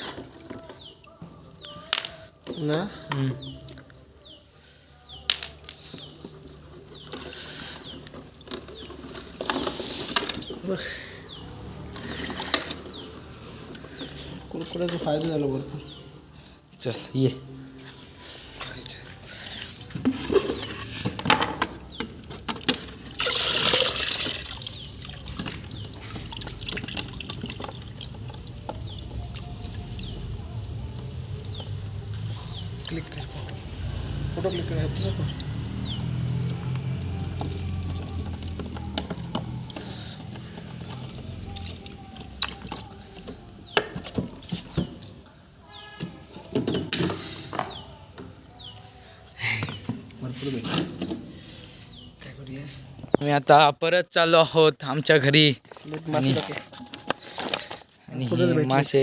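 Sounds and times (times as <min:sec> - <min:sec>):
water gushing: 0:23.0 - 0:31.4
shallow water splashing: 0:23.1 - 0:30.2.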